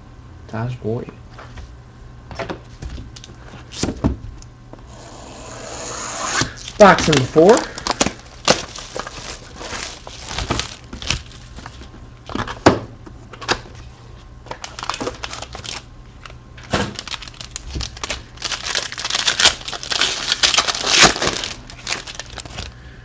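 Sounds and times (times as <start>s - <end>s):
plastic wrapper crinkling and tearing: 6.6s - 11.8s, 14.4s - 22.8s.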